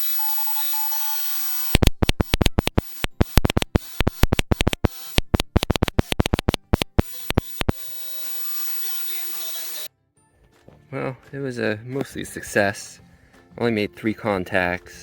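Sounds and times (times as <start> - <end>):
morse keying clicks and pops: 1.8 - 7.8.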